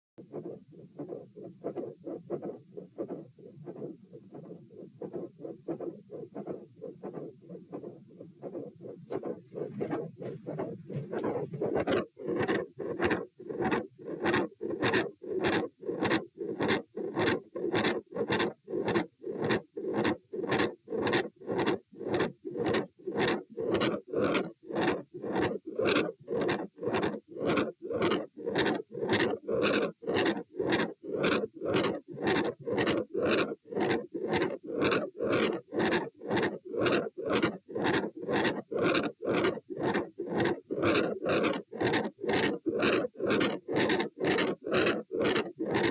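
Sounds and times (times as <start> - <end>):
heartbeat through stethoscope: 0.2 - 29.4.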